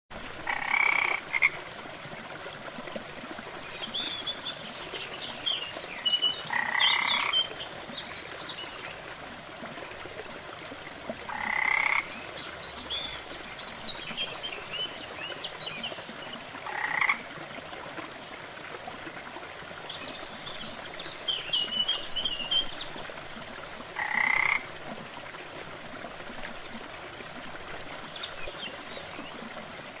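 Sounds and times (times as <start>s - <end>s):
frogs croaking: 0.4s - 1.6s, 6.4s - 7.5s, 11.3s - 12.2s, 16.6s - 17.3s, 23.9s - 24.7s.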